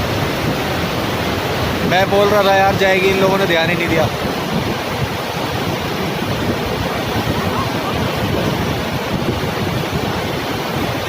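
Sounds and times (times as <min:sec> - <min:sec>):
floodwater rushing: 0:00.0 - 0:11.0.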